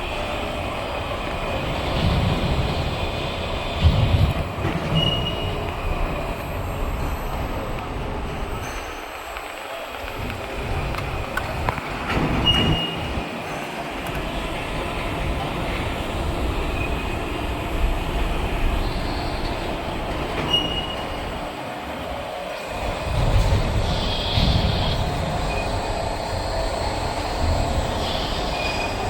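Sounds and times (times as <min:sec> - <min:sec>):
welding rotator rumbling: 0:00.0 - 0:29.0
high metallic squeals: 0:04.8 - 0:06.0, 0:18.6 - 0:21.6, 0:22.8 - 0:29.0.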